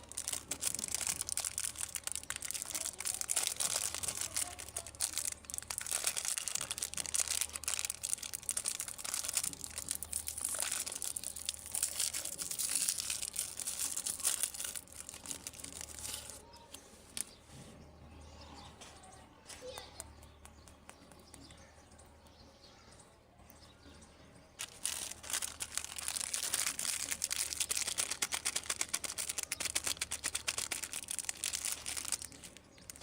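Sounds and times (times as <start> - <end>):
packaging crinkling and tearing: 0.0 - 17.4, 24.6 - 33.0.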